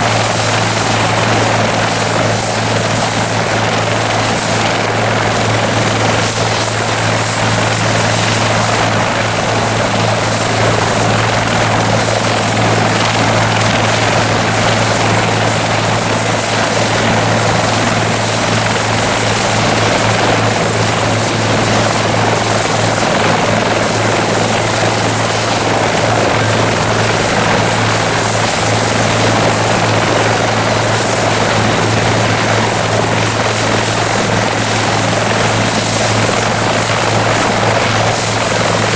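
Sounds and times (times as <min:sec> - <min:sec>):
helicopter engine drone: 0:00.0 - 0:38.9.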